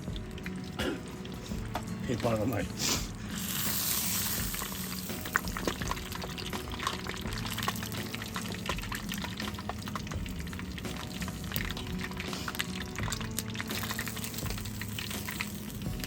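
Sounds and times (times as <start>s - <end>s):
oil sizzling and crackling: 0.0s - 16.0s.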